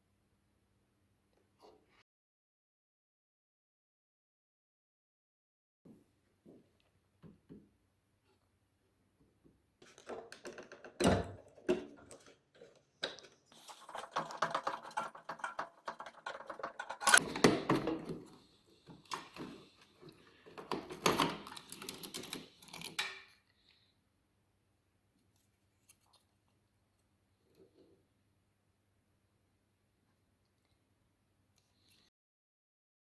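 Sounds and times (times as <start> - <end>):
tools clicking and rattling: 10.3 - 18.1, 20.6 - 23.4.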